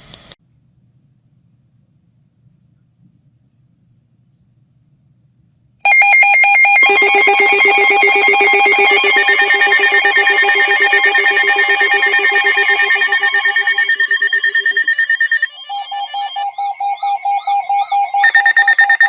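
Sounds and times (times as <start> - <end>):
electronic alert tones pulsing: 5.9 - 19.0.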